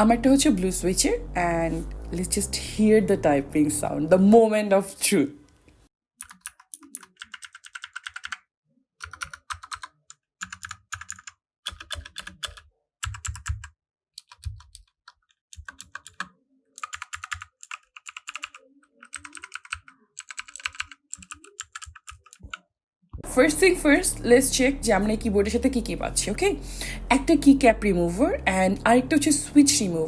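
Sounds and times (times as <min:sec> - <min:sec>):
mechanical keyboard key clicks: 0:09.0 - 0:14.8, 0:15.6 - 0:22.6.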